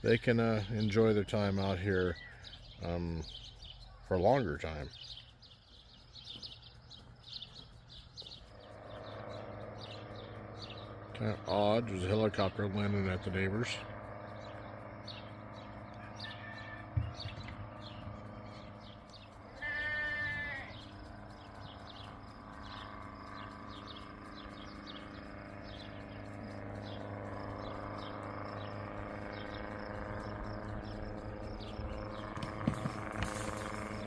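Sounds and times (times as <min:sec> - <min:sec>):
helicopter drone: 0:00.0 - 0:34.0
goat bleating: 0:19.5 - 0:20.9.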